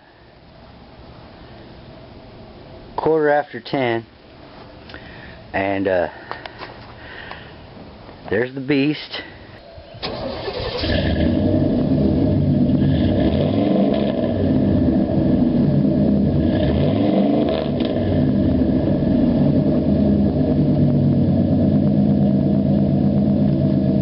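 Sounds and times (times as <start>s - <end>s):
vehicle engine revving: 10.1s - 24.0s.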